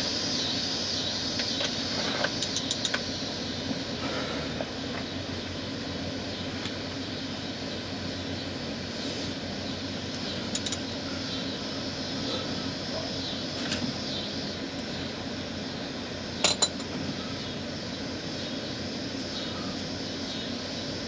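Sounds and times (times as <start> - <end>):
steady background hum: 0.0 - 21.0
metallic clinks: 2.4 - 3.0, 10.5 - 10.9, 16.4 - 16.9.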